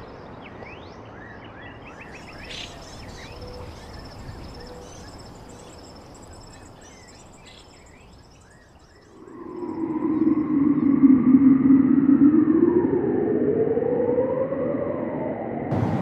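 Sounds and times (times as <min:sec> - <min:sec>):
bird chirps: 0:00.1 - 0:11.0
pulsing insect trill: 0:02.9 - 0:13.3
low droning tone: 0:09.1 - 0:16.0.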